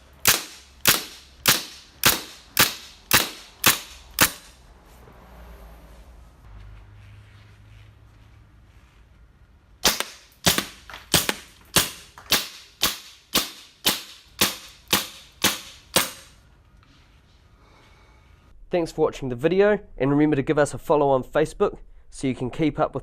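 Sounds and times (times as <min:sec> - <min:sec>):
airsoft pistol shots popping: 0:09.8 - 0:16.3.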